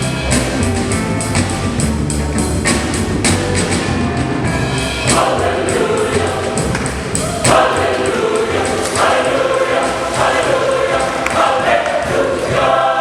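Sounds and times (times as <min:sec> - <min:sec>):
band accompaniment: 0:00.0 - 0:13.0
choir singing gospel: 0:04.7 - 0:13.0.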